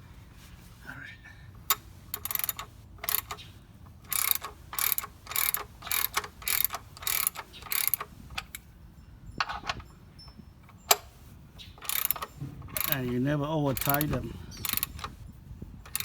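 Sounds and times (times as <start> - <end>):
ratchet wrench rasping: 1.6 - 8.6, 11.8 - 15.2.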